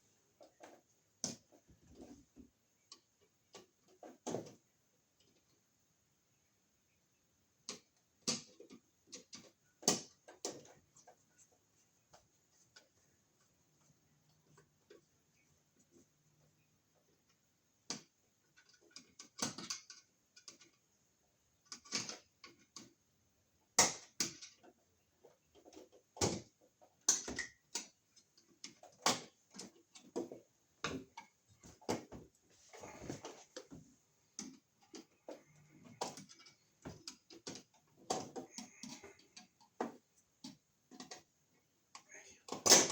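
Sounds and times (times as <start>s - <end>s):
tools clicking and knocking: 17.0s - 20.9s, 23.8s - 42.9s.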